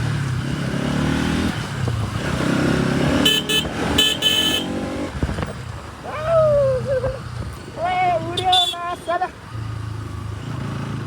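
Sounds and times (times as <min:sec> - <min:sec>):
vehicle horn blasts: 0:03.2 - 0:04.8, 0:08.4 - 0:08.8.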